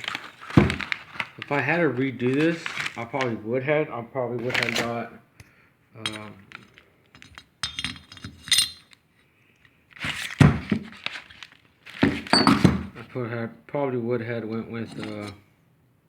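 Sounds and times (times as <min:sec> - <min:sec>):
parts clattering and handling: 0:00.0 - 0:01.6, 0:04.4 - 0:05.0, 0:06.0 - 0:13.1, 0:14.5 - 0:15.4
small metal parts clinking: 0:06.1 - 0:09.0.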